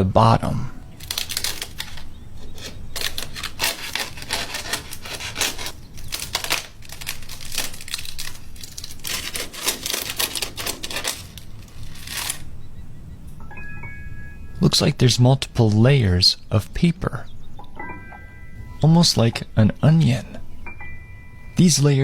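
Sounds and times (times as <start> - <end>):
wasp nest crackling and tearing: 0.9 - 12.6.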